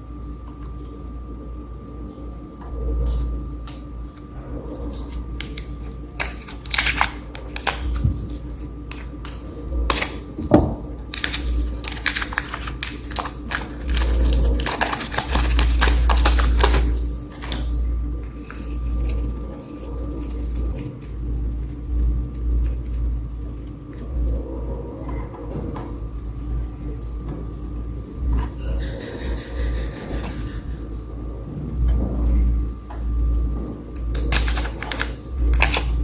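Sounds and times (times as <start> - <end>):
low rumble: 7.1 - 34.6
rapid clicking and tapping: 11.1 - 17.8, 33.9 - 36.0.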